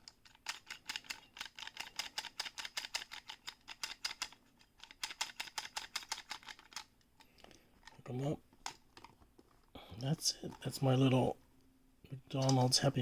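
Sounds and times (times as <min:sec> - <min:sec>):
rapid plastic clicking: 0:00.0 - 0:07.0.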